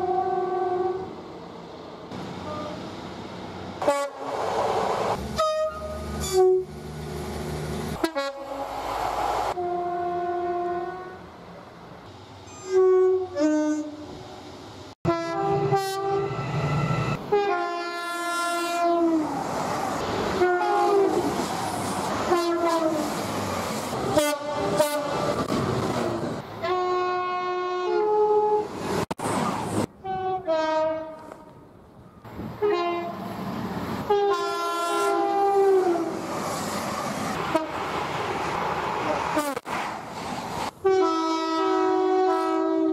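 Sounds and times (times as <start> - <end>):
two-tone train horns: 0.0 - 1.1, 2.4 - 2.9, 3.8 - 4.4, 5.4 - 6.8, 8.0 - 8.8, 9.5 - 11.2, 12.5 - 14.2, 15.0 - 19.3, 20.3 - 21.3, 22.3 - 23.1, 24.0 - 25.4, 26.6 - 28.7, 30.0 - 31.6, 32.6 - 33.2, 34.1 - 36.1, 37.5 - 37.8, 39.3 - 39.6, 40.8 - 42.9
trains passing rush and wheels: 0.0 - 42.9.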